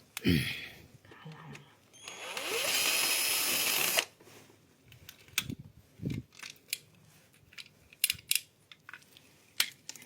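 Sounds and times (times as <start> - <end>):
power screwdriver whirring: 2.0 - 4.1.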